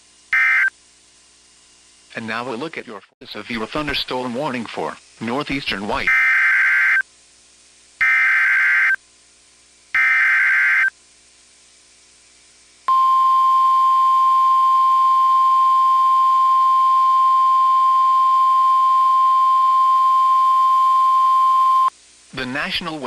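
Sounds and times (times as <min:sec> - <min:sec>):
screeching digital data bursts: 0:06.0 - 0:07.0, 0:08.0 - 0:09.0, 0:10.0 - 0:10.9
steady warning alarm tone: 0:06.0 - 0:07.0, 0:08.0 - 0:09.0, 0:10.0 - 0:10.9, 0:12.9 - 0:21.9.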